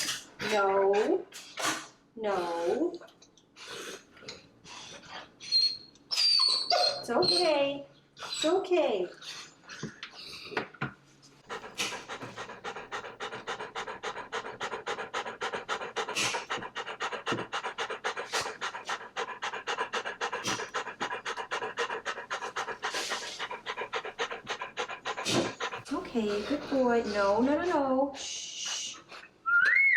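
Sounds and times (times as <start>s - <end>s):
dog panting rapidly: 11.4s - 29.2s.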